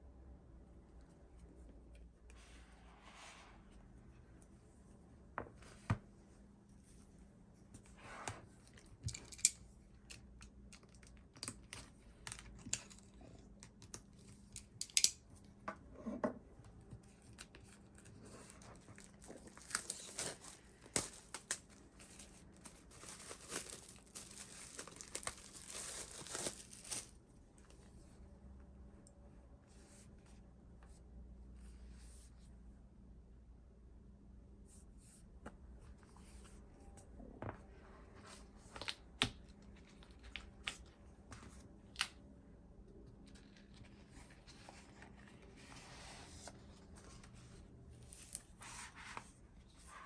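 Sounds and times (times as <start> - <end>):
packaging tearing and crinkling: 19.0 - 27.2.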